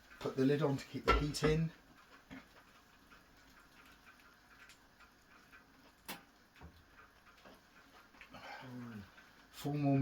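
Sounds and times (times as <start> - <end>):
faint clicks: 1.7 - 9.6.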